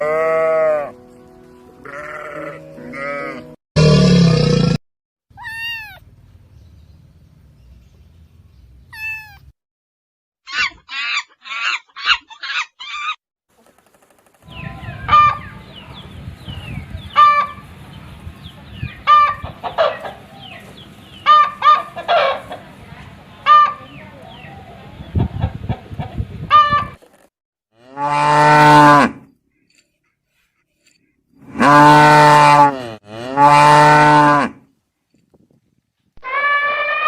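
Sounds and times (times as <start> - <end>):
cat meowing: 5.4 - 6.0, 8.9 - 9.5
chickens clucking: 14.5 - 17.7, 18.6 - 27.1.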